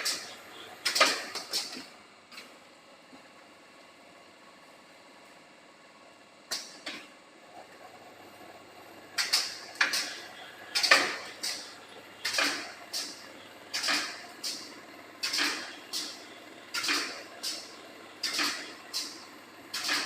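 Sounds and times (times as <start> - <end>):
welding machine clacks with hiss: 0.0 - 2.5, 6.5 - 7.1, 9.1 - 20.0.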